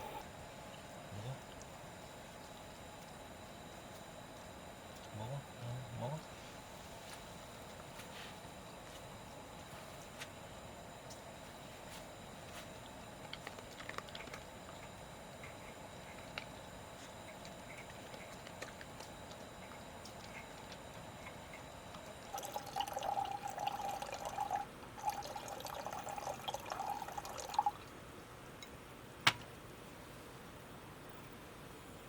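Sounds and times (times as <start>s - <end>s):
liquid trickling: 17.8s - 27.9s.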